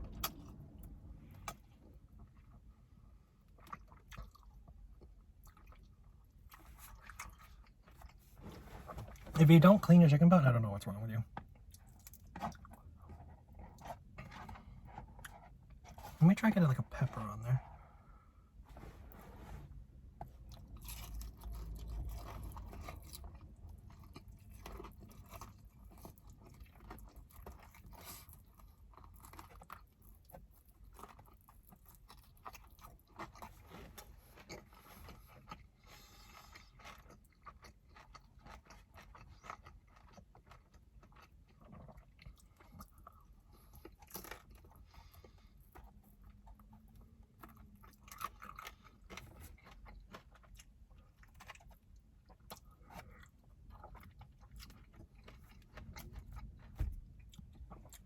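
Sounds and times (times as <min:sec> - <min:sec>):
chewing chicken wings: 0:20.4 - 0:58.0.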